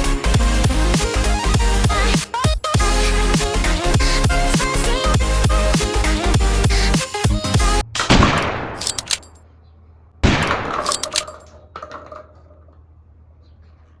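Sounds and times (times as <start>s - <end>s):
electronic music: 0.0s - 8.0s
short metallic clicks: 7.9s - 9.5s, 10.5s - 11.6s.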